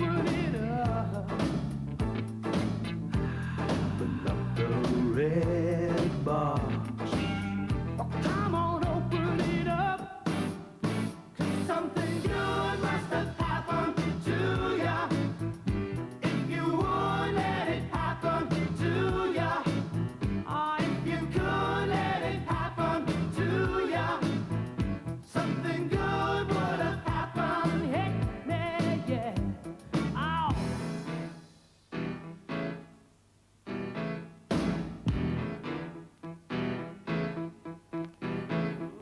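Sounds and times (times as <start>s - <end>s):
pop-soul song with singing: 0.0s - 1.8s, 3.2s - 10.6s, 11.4s - 31.0s.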